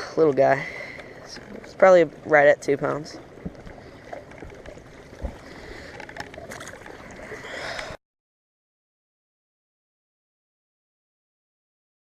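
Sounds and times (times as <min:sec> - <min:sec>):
wind and water hiss: 0:00.0 - 0:08.0.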